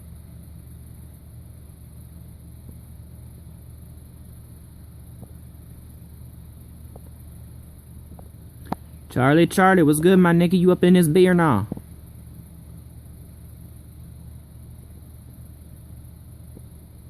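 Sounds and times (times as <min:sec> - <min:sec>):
steady low hum: 0:00.0 - 0:17.0
faint ticks: 0:02.6 - 0:02.9, 0:05.1 - 0:05.4, 0:06.8 - 0:07.2, 0:08.1 - 0:09.0, 0:16.5 - 0:16.8.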